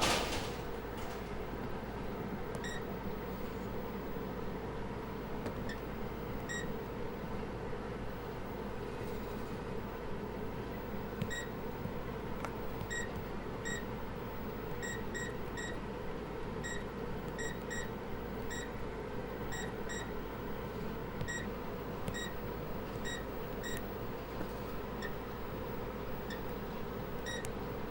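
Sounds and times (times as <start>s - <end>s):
computer machinery humming: 0.0s - 27.9s.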